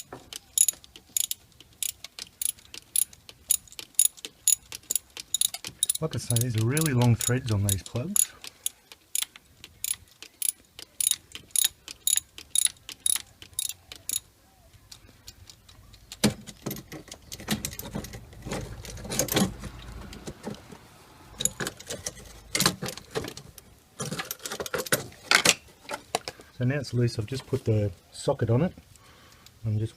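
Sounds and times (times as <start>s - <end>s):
ratchet clicking: 0.0s - 14.2s
handling noise: 16.0s - 26.5s.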